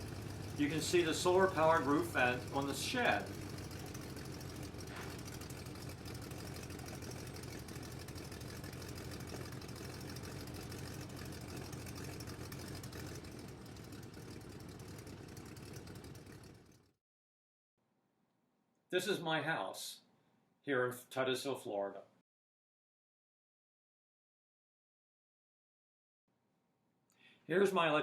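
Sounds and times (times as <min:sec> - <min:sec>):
airplane engine running: 0:00.0 - 0:16.8.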